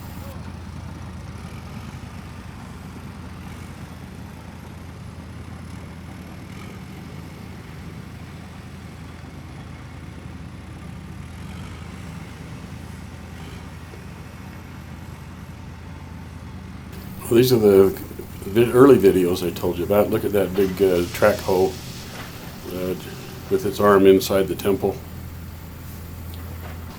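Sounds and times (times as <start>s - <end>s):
low mechanical hum: 0.0s - 26.9s
faint high-pitched whine: 17.0s - 26.9s.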